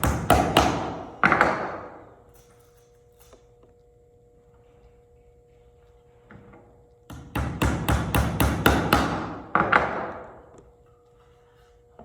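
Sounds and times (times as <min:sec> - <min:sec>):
hammer driving nail into wood: 0:00.0 - 0:01.8, 0:07.1 - 0:10.2.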